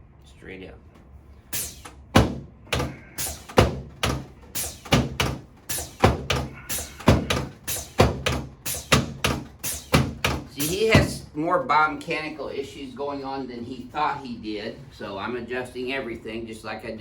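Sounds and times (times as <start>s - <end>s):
sharp thuds: 1.5s - 11.2s.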